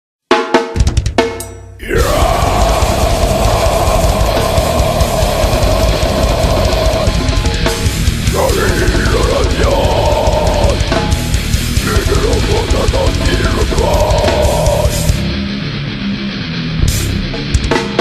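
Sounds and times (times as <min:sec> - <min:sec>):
heavy rock music: 0:01.0 - 0:18.0.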